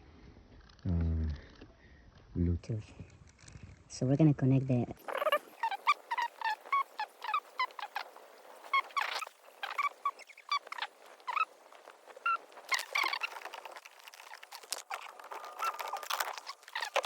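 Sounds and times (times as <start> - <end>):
short chirping animal calls: 5.0 - 17.0.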